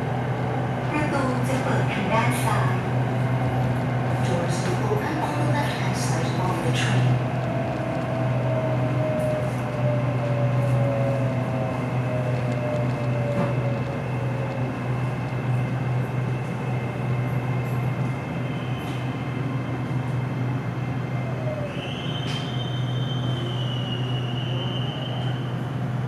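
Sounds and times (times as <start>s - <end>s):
electric train low hum: 0.0s - 26.0s
train high whine: 0.0s - 26.0s.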